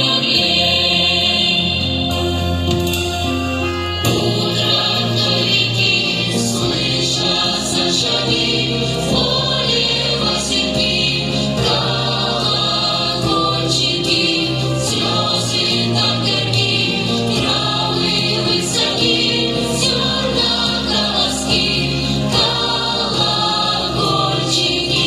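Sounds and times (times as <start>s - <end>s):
vocal group singing: 0.0s - 2.7s, 4.0s - 25.0s
light percussion: 2.1s - 4.8s.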